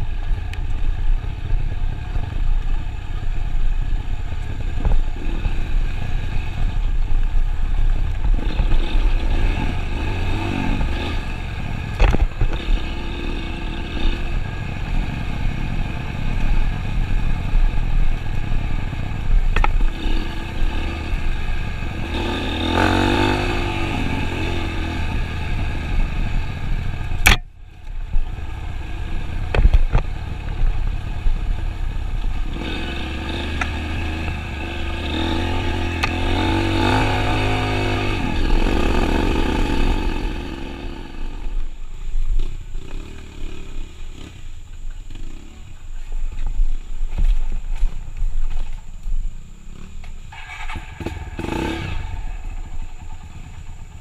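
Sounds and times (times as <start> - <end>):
vehicle engine running: 0.0 - 54.0
sharp click: 27.2 - 27.5.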